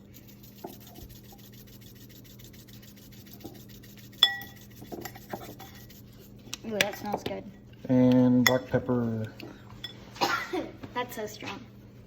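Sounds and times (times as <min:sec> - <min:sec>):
hard object clinking on bowl: 0:04.2 - 0:05.7, 0:08.4 - 0:08.8.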